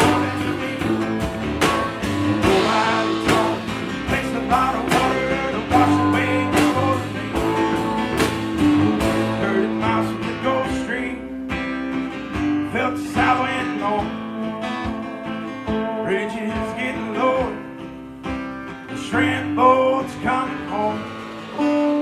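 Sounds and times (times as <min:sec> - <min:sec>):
drum hits: 0:00.0 - 0:10.8
band playing instrumental: 0:00.0 - 0:11.7, 0:20.4 - 0:22.0
guitar: 0:00.0 - 0:22.0.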